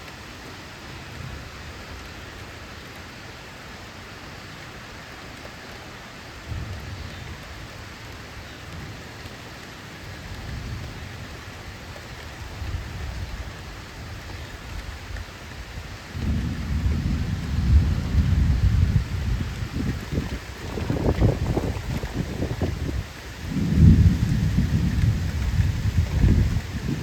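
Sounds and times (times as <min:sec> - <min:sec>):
steady rain: 0:00.0 - 0:27.0
thunder rumbling: 0:10.1 - 0:27.0.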